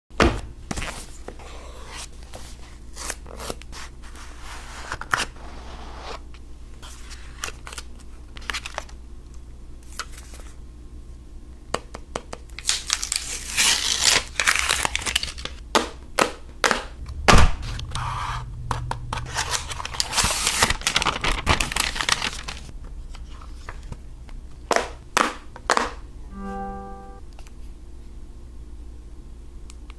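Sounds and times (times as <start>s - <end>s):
paper and plastic tearing and crinkling: 12.6s - 15.6s, 19.3s - 22.7s.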